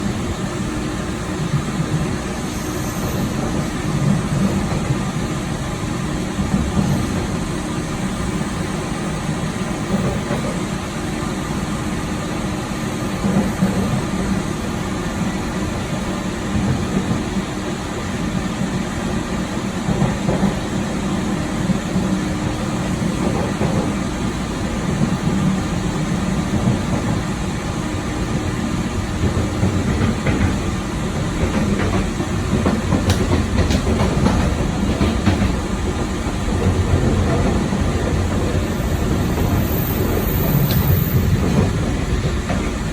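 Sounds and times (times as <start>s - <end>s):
train wheels rumbling on track: 0.0s - 42.9s.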